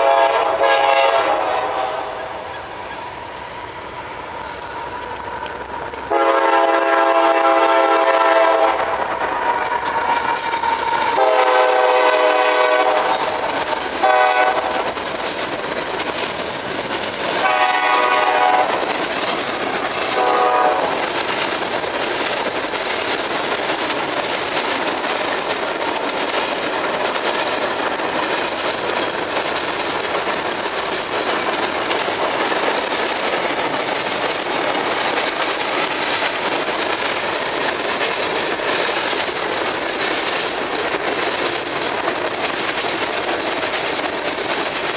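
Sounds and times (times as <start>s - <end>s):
locomotive air horn blasts: 0.0s - 2.5s, 6.1s - 9.0s, 11.2s - 13.4s, 14.0s - 14.9s, 17.4s - 18.8s, 20.0s - 21.0s
train wheels clacking on rails: 0.0s - 44.9s.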